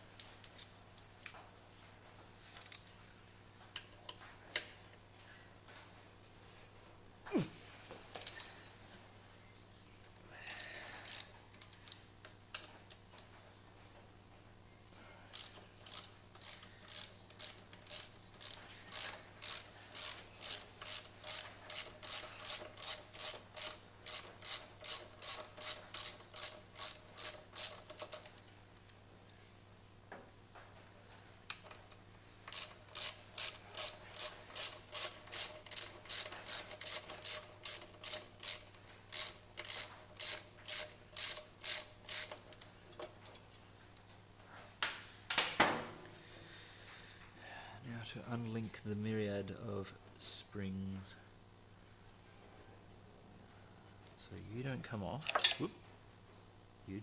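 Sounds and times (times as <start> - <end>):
ratchet wrench clicking: 2.6 - 2.8, 8.1 - 8.5, 10.5 - 13.3, 15.3 - 28.4, 32.5 - 42.7.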